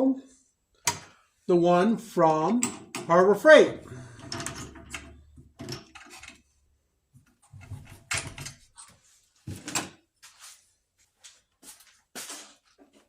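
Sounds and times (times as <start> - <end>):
hard objects knocking and rattling: 4.1 - 6.4.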